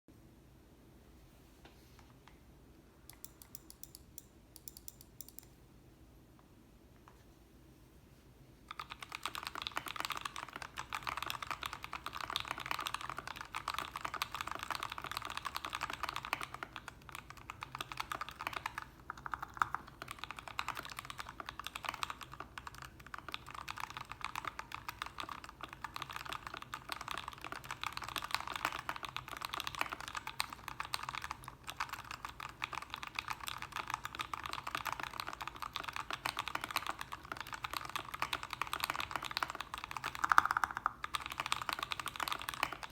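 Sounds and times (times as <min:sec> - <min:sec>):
typing on mechanical keyboard: 0:08.7 - 0:42.9.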